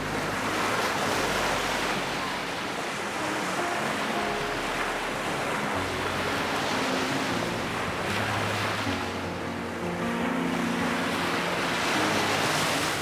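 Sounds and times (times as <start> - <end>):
ocean surf on beach: 0.0 - 13.0.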